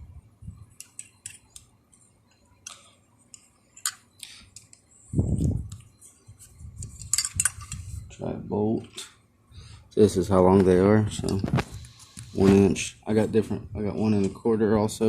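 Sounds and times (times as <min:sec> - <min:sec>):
metal tools clinking: 0:06.8 - 0:07.9.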